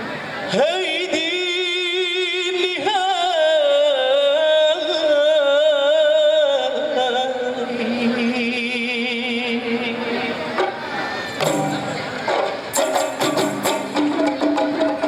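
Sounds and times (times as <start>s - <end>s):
man singing melismatic melody: 0.5s - 10.6s.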